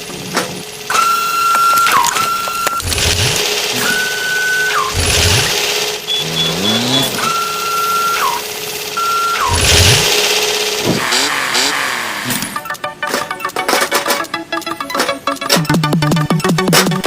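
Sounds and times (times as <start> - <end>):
vehicle engine revving: 0.0 - 12.6
high steady tones: 0.9 - 10.3.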